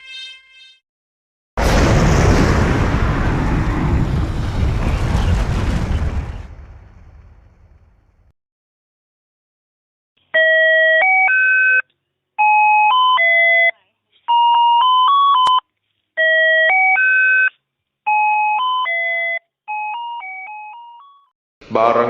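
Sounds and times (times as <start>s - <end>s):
electronic doorbell chime tune: 0.0s - 0.8s, 10.4s - 11.8s, 12.4s - 13.7s, 14.3s - 15.6s, 16.2s - 17.5s, 18.1s - 21.3s.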